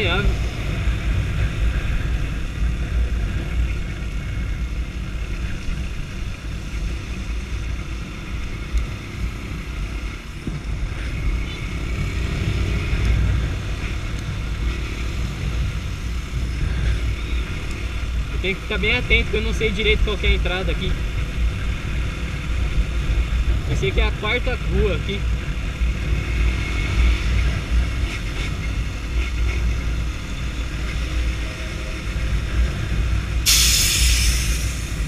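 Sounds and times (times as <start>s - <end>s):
wind rumble on microphone: 0.0s - 33.5s.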